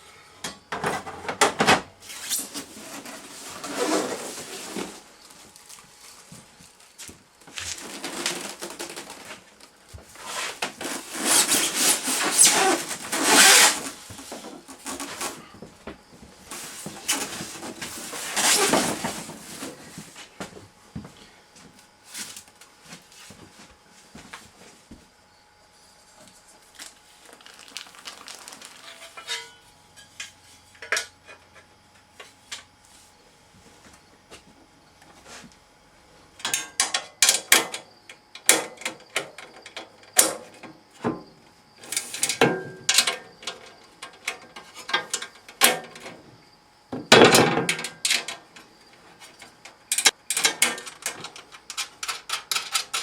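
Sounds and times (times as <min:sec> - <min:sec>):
parts being set down: 0:00.4 - 0:05.1, 0:26.8 - 0:31.4, 0:47.0 - 0:48.5
packing material rustling: 0:26.7 - 0:29.3
machine parts clattering: 0:27.4 - 0:29.6, 0:49.9 - 0:53.0.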